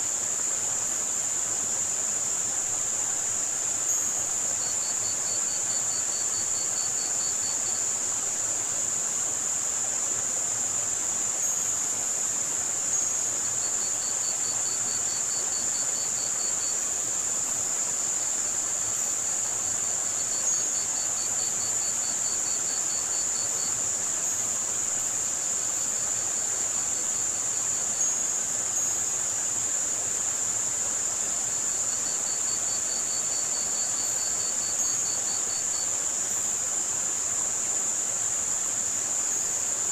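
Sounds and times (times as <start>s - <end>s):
crickets chirping: 0.0s - 39.9s
high-pitched white noise hiss: 0.0s - 39.9s.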